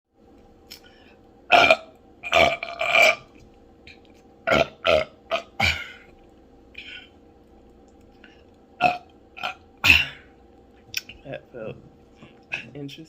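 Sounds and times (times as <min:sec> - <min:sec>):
person burping: 0:01.5 - 0:03.3, 0:04.4 - 0:06.1, 0:08.8 - 0:10.4.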